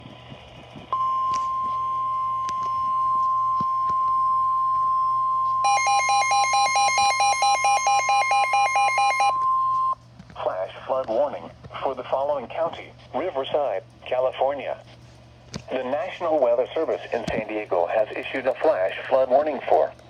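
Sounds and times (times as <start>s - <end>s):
electronic alarm beeping: 0.9s - 10.0s
steady emergency alert tone: 0.9s - 10.0s.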